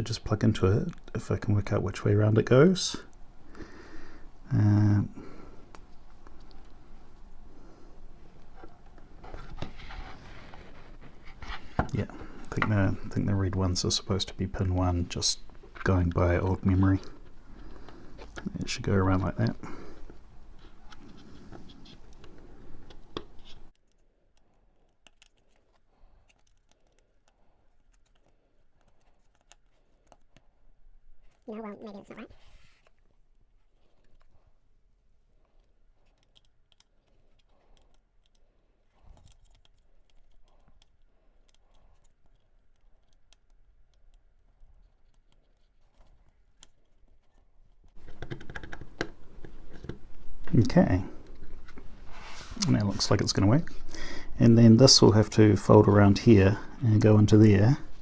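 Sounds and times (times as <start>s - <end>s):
plastic connector clicks and scrapes: 35.4s - 50.2s
background hiss: 48.9s - 58.0s.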